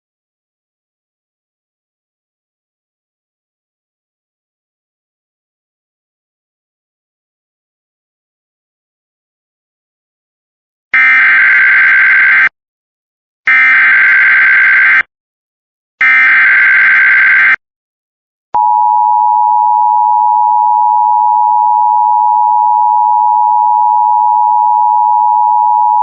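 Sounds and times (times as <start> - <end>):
digital data screech: 13.5 - 15.0, 16.0 - 17.6
steady attention tone: 18.6 - 26.0.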